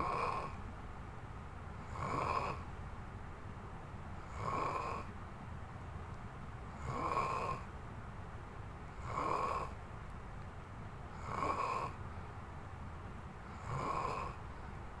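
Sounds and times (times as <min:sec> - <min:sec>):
rasping snores: 0:00.0 - 0:00.6, 0:01.8 - 0:02.7, 0:04.3 - 0:05.1, 0:06.7 - 0:07.7, 0:09.0 - 0:09.8, 0:11.2 - 0:12.0, 0:13.5 - 0:14.4.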